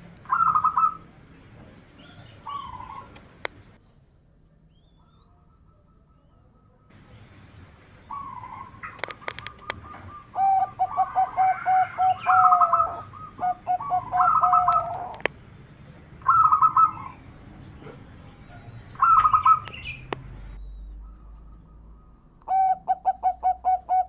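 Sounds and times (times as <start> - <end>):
dove cooing: 0.2 - 1.2, 1.9 - 3.8, 8.0 - 15.3, 16.2 - 20.1, 21.0 - 24.0
sharp clicks: 8.8 - 9.8.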